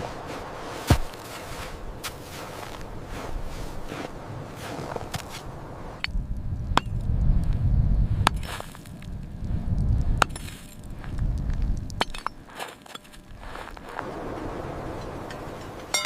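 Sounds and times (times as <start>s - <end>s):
low rumble: 0.0s - 12.3s.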